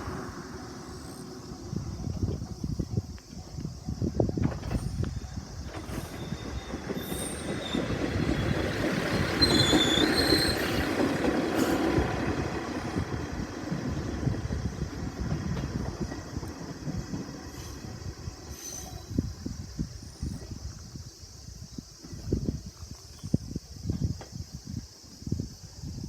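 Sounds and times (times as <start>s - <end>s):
train wheels rumbling on rails: 0.0s - 22.9s
high wheel squeal: 4.7s - 12.0s, 17.5s - 19.3s.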